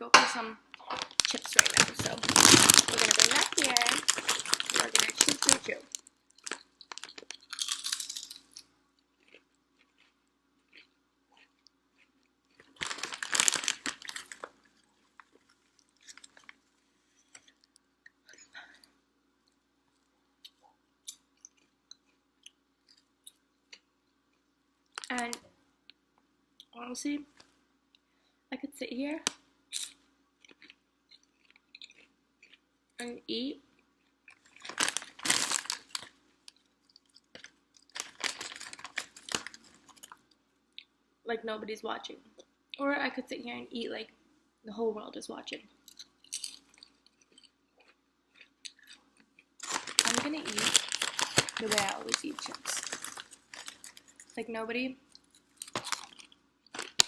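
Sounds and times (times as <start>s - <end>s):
crunching potato chips: 0.8s - 16.6s, 29.8s - 32.6s, 34.0s - 40.4s, 45.9s - 54.4s, 55.1s - 57.0s.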